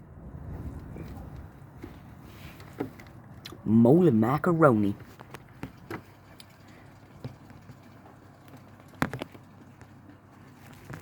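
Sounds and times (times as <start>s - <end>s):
rain dripping: 4.8s - 11.0s.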